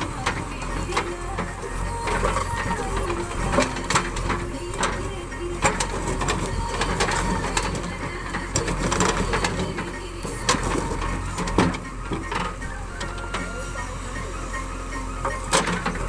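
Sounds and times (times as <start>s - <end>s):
diesel engine running: 0.0s - 16.0s
metal clanks and knocks: 0.0s - 16.0s.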